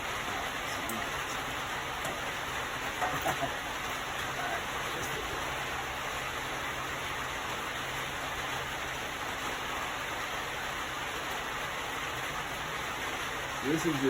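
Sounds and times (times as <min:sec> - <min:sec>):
steady rushing hiss: 0:00.0 - 0:14.0.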